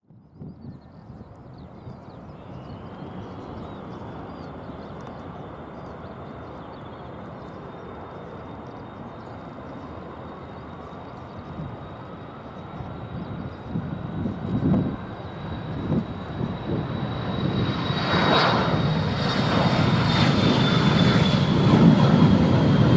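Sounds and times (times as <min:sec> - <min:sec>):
jet engines rushing: 0:02.7 - 0:22.9
turbine whine: 0:07.0 - 0:22.9.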